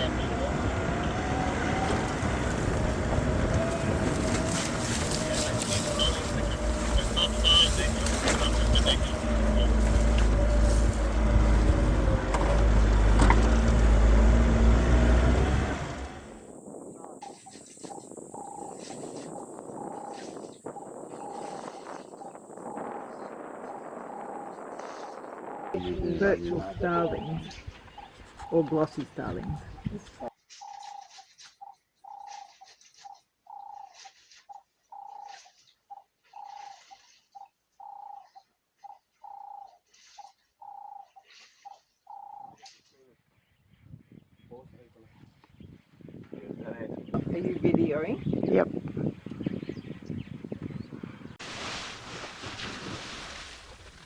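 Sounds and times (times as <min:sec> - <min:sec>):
bird calling low held note: 0:00.0 - 0:16.3, 0:17.9 - 0:22.5, 0:42.1 - 0:42.6
birds chattering calls: 0:00.0 - 0:16.4, 0:17.1 - 0:44.5
vehicle engine running: 0:00.0 - 0:16.5.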